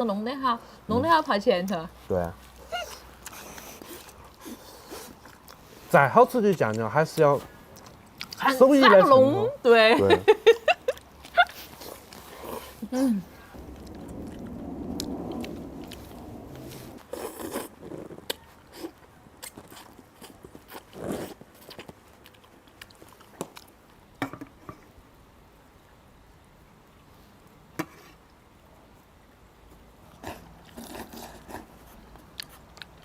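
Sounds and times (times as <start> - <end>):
people chewing and biting: 2.3 - 8.6, 10.8 - 12.9, 13.6 - 24.0, 30.1 - 33.0.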